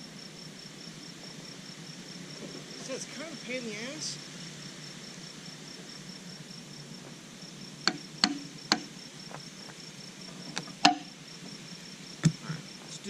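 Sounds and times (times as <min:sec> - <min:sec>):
cricket chirping: 0:00.0 - 0:13.0
sharp knocks: 0:07.9 - 0:08.9, 0:10.8 - 0:11.1.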